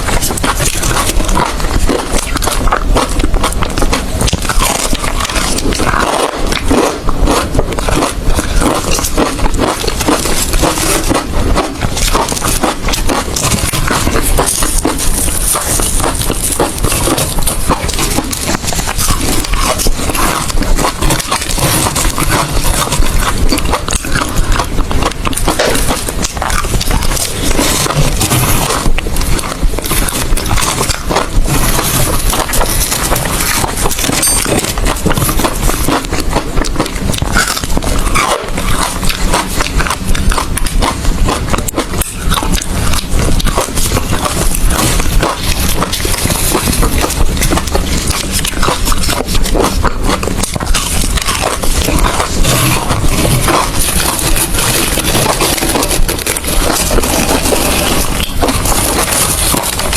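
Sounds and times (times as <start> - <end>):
crunching and chewing ice: 0.0 - 59.9.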